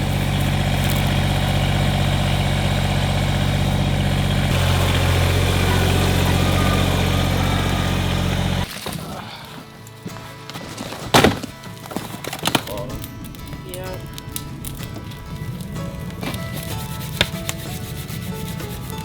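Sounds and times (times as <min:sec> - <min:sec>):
motor running: 0:00.0 - 0:08.7.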